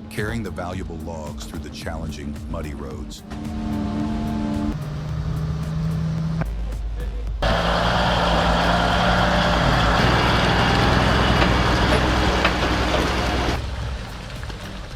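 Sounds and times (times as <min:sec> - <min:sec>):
loud rushing noise: 0:03.2 - 0:06.8, 0:07.4 - 0:14.9
truck diesel engine droning: 0:03.2 - 0:14.9.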